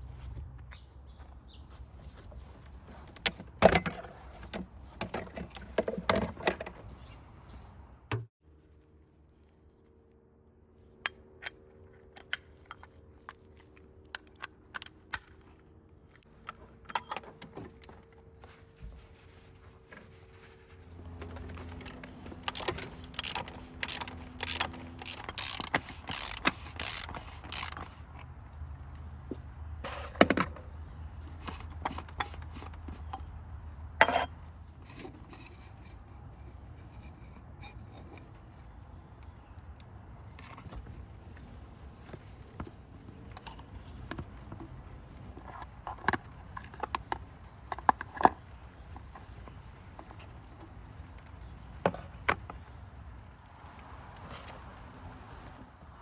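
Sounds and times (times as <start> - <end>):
ratchet wrench clicking: 22.4 - 28.2.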